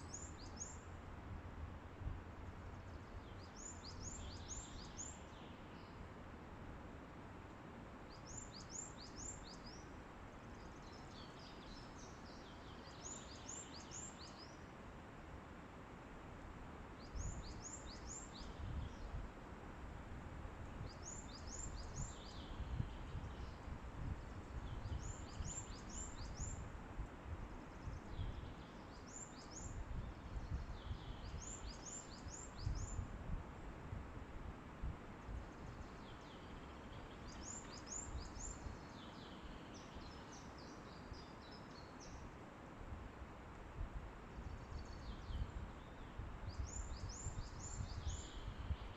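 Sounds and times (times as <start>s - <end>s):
songbird singing: 0.0s - 6.2s, 7.9s - 15.2s, 16.9s - 19.4s, 20.2s - 34.0s, 35.1s - 42.6s, 43.3s - 48.9s
forest wind: 0.0s - 48.9s
wind gusts on microphone: 18.4s - 28.7s, 29.6s - 36.6s, 42.8s - 48.9s.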